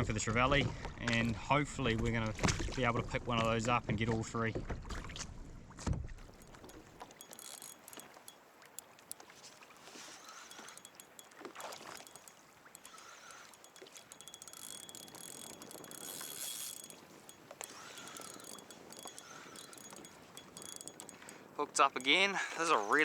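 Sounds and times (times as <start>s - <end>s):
fishing gear clicking: 6.2s - 22.3s
faint water sounds: 6.2s - 23.0s.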